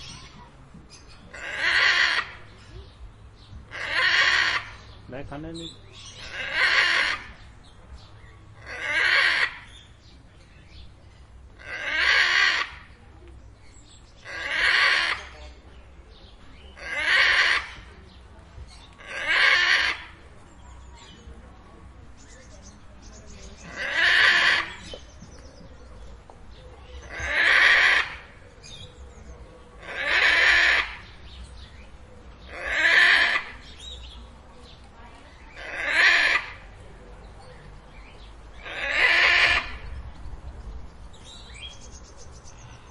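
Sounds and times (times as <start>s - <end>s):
parrot screeching: 1.3s - 2.3s, 3.7s - 4.7s, 6.3s - 7.3s, 8.6s - 9.6s, 11.6s - 12.8s, 14.3s - 15.3s, 16.8s - 17.7s, 19.0s - 20.0s, 27.1s - 28.2s, 29.8s - 31.0s, 32.5s - 33.6s, 35.6s - 36.6s, 38.6s - 39.8s.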